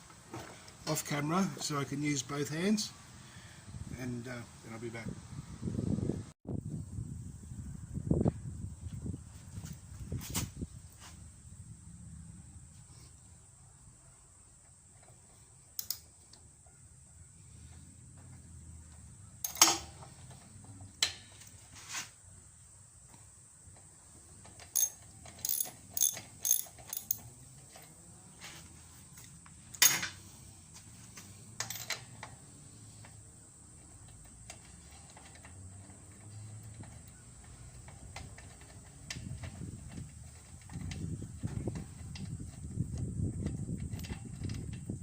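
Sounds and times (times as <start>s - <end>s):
ratchet wrench clicking: 15.8s - 16.0s, 24.6s - 27.2s.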